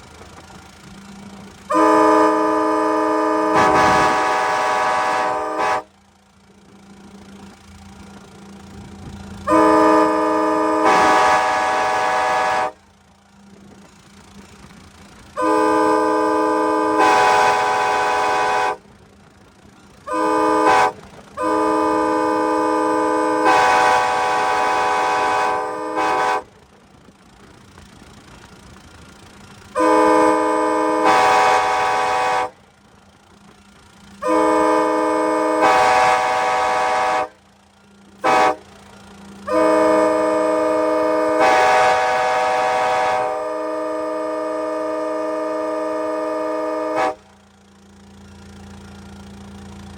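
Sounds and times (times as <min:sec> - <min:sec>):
locomotive air horn blasts: 0:01.3 - 0:06.0, 0:09.3 - 0:13.0, 0:15.3 - 0:19.0, 0:20.0 - 0:26.7, 0:29.7 - 0:32.7, 0:34.1 - 0:48.0.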